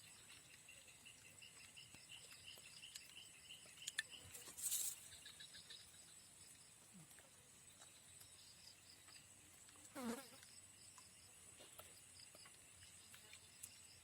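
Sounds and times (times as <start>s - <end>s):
soft rhythmic chirping: 0.0s - 9.4s
insect chorus droning: 0.0s - 14.0s.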